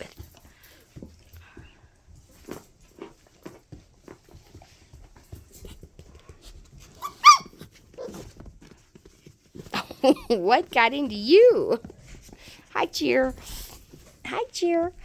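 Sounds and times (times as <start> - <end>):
puppies scuffling: 0.0 - 15.0
puppy yip: 7.0 - 8.2.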